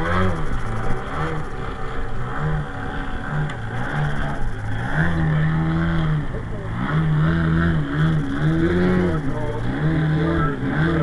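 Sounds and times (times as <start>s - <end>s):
model airplane engine buzzing: 0.0s - 11.0s.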